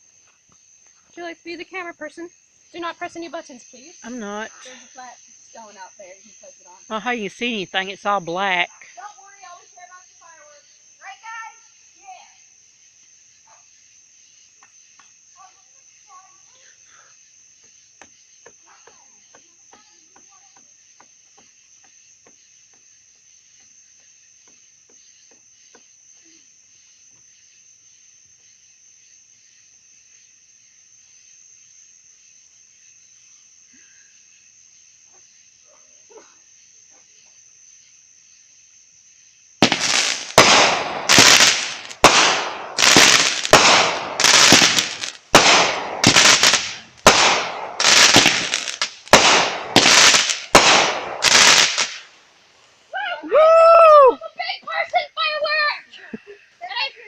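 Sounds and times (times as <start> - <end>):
crickets chirping: 0.0 - 57.0
fireworks shots whooshing up: 39.6 - 52.1.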